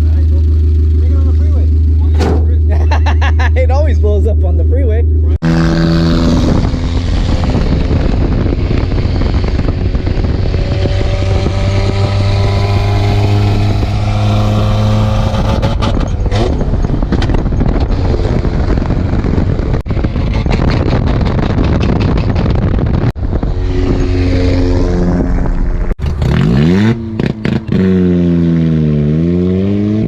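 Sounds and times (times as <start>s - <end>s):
car engine revving with rod knock: 10.7s - 18.1s.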